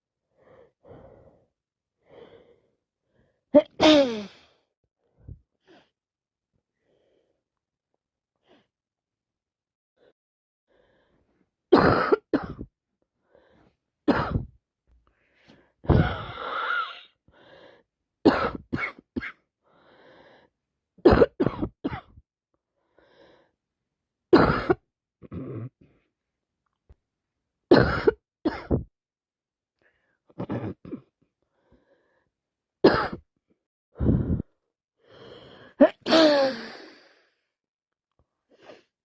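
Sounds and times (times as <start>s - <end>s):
woman coughing: 3.6s - 4.3s, 11.8s - 12.7s, 14.1s - 14.5s, 18.3s - 19.4s, 21.1s - 22.2s, 24.4s - 25.7s, 27.7s - 28.9s, 30.4s - 31.0s, 32.9s - 33.2s, 35.8s - 36.7s
throat clearing: 24.5s - 25.8s.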